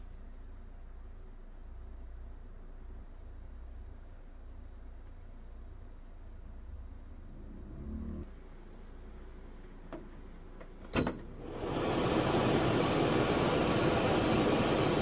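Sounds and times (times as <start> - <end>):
dehumidifier fan running: 8.4 - 15.0.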